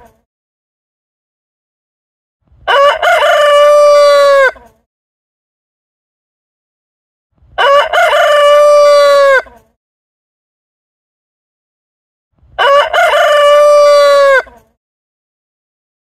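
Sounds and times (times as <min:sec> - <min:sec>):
rooster crowing: 0:02.7 - 0:04.7, 0:07.6 - 0:09.6, 0:12.6 - 0:14.6.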